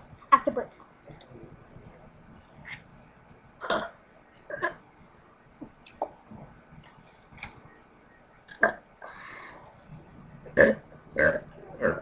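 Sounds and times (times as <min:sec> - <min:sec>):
person burping: 0:03.6 - 0:04.8, 0:10.5 - 0:12.0.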